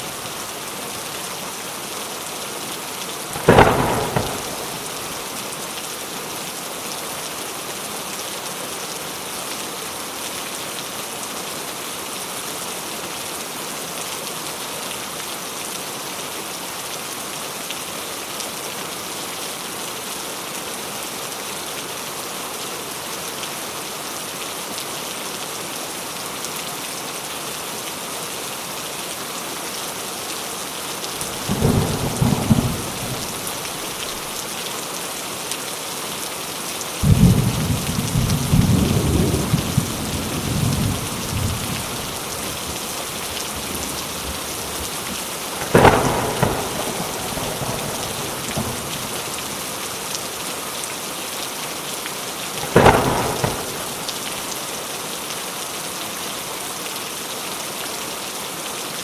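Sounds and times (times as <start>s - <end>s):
steady rain hiss: 0.0s - 59.0s
loud thunder crack: 3.3s - 5.3s, 31.2s - 34.3s, 37.0s - 49.7s, 52.6s - 54.5s
thunder rumbling: 3.3s - 5.4s, 31.2s - 34.4s, 37.0s - 50.0s, 52.6s - 54.6s.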